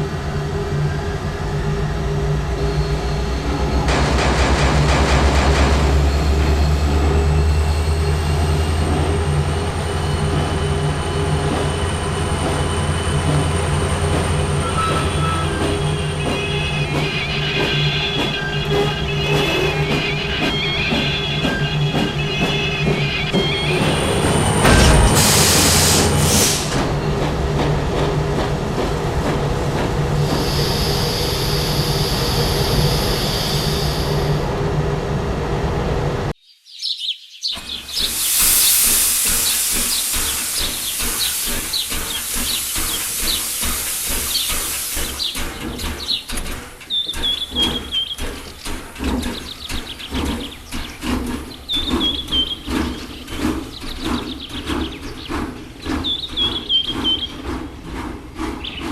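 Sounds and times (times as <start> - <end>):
locomotive rumbling: 0.0 - 36.4, 37.6 - 58.9
birds chirping: 9.5 - 24.9, 36.4 - 58.9
steam hissing: 22.3 - 27.1, 30.1 - 34.4, 37.6 - 58.9
burst of noise: 24.5 - 26.9.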